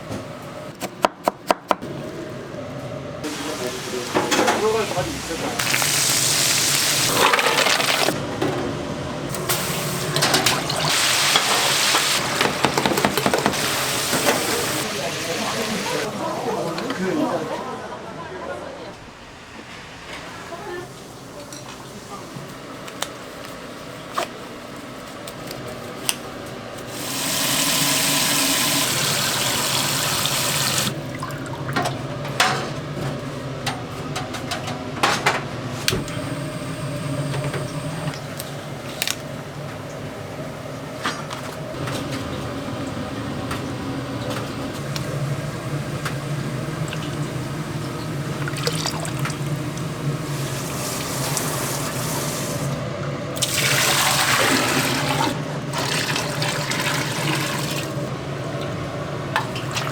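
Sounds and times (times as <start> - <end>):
water running from a tap: 3.3 - 8.2, 26.9 - 31.8, 42.6 - 52.8, 53.4 - 58.8
kitchen utensils and dishes clinking: 3.3 - 8.7, 10.1 - 16.1, 31.7 - 36.0.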